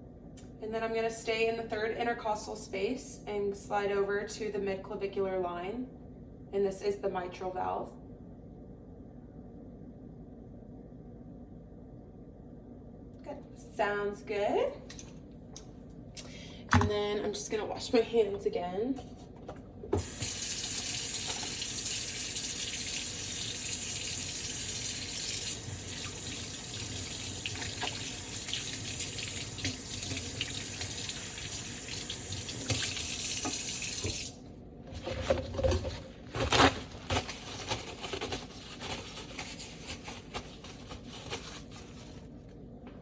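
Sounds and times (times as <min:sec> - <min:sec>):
tap water running into sink: 0:20.0 - 0:34.4.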